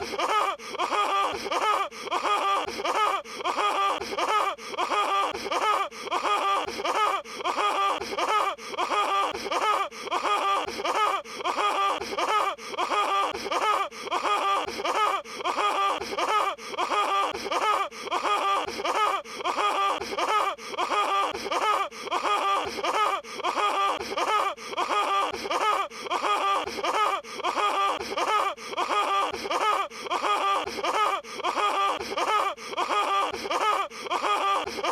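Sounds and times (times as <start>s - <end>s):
cartoon character laughing: 17.5s - 34.9s.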